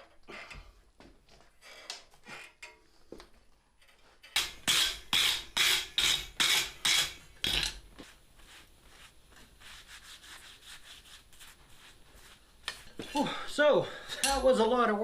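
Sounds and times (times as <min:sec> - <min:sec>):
hand tool rasping on metal: 0:04.4 - 0:07.6.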